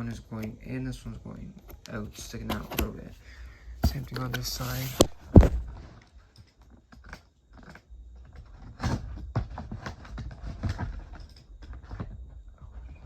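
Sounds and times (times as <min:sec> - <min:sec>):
knocks and scrapes on cardboard box: 0:03.8 - 0:06.0.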